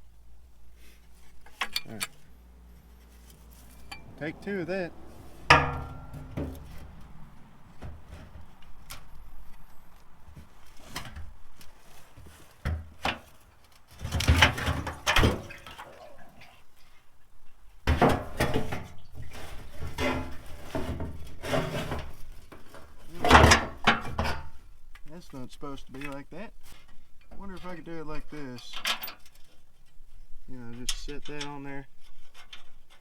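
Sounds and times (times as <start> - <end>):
metal clinks and rattles: 3.3 - 4.2.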